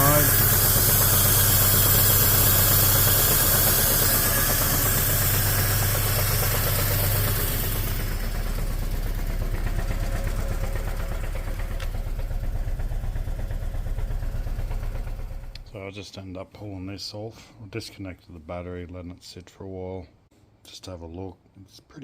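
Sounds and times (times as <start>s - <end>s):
car engine idling: 0.0s - 15.7s.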